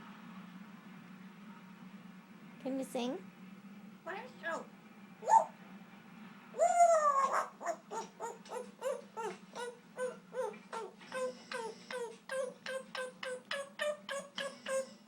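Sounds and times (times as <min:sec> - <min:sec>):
parrot call rising and falling: 0:05.2 - 0:05.6, 0:06.6 - 0:15.0.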